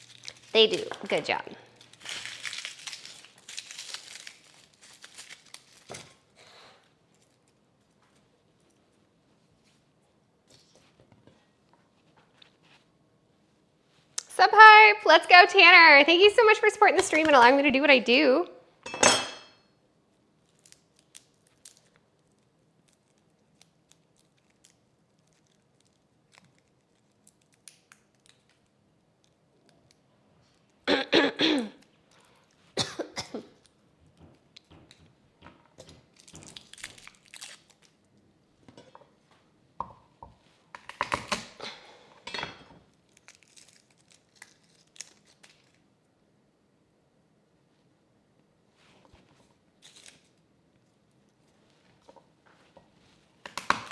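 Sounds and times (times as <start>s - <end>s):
crinkling and crunching: 0.0s - 6.4s, 20.4s - 30.7s, 35.7s - 38.2s, 42.8s - 45.9s, 48.8s - 53.9s
person coughing: 30.9s - 31.8s, 32.8s - 33.6s.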